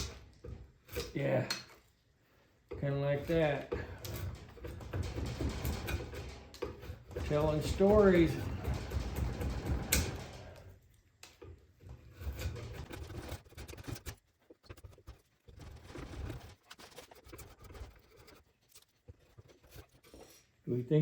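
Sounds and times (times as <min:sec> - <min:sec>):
hand tools scraping wood: 0:00.0 - 0:01.8, 0:02.7 - 0:10.8, 0:11.4 - 0:20.7.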